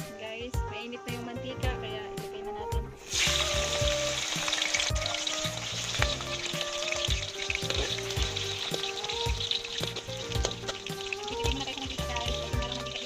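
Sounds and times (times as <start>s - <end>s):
oil sizzling in a pan: 3.0s - 13.0s.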